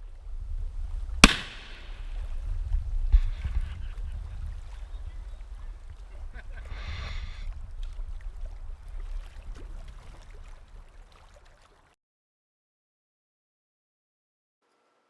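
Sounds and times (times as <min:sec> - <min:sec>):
wind buffeting microphone: 0:00.0 - 0:11.1.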